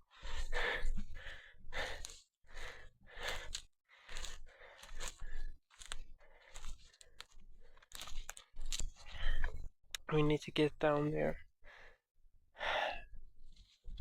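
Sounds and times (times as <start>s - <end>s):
footsteps crunching on ground: 4.1s - 9.1s.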